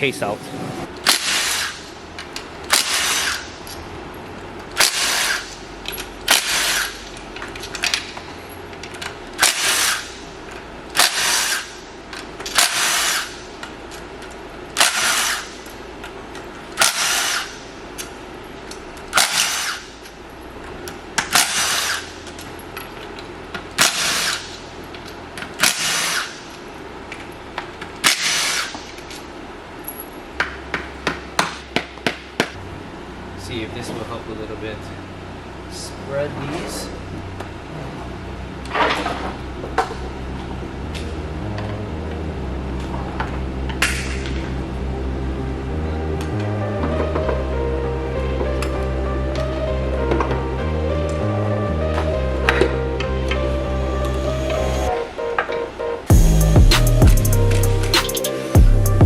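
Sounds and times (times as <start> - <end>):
cordless power tool bursts: 2.8 - 3.4, 14.8 - 15.5.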